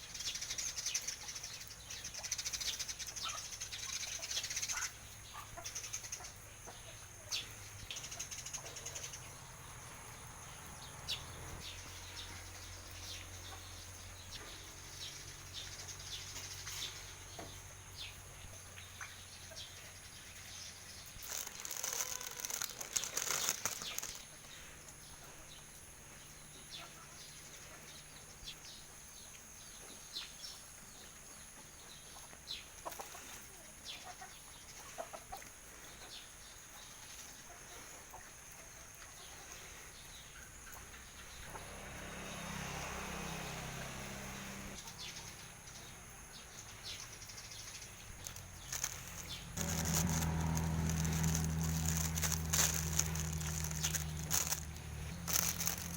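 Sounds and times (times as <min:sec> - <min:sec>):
chickens eating: 0:20.5 - 0:25.4, 0:32.1 - 0:36.2, 0:46.6 - 0:55.9.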